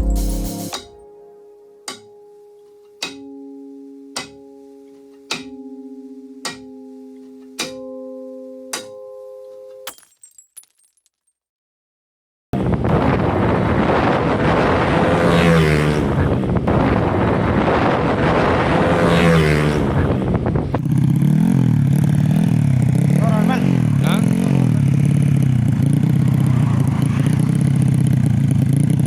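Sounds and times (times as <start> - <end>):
plucked music notes: 0.0 - 9.8
motorcycle engine revving: 14.6 - 29.0.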